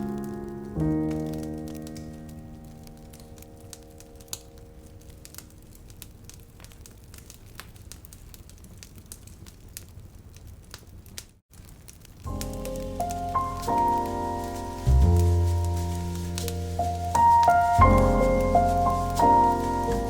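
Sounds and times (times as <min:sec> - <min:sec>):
piano chord: 0:00.0 - 0:05.4, 0:12.3 - 0:20.0
crackling and clicking: 0:00.0 - 0:20.0
low hiss: 0:00.0 - 0:20.0.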